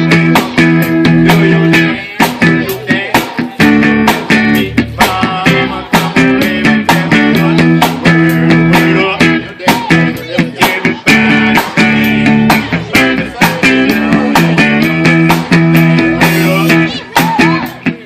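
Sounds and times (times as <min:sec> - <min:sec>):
blues music with electric guitar: 0:00.0 - 0:18.0
steady drum beat: 0:00.0 - 0:18.0.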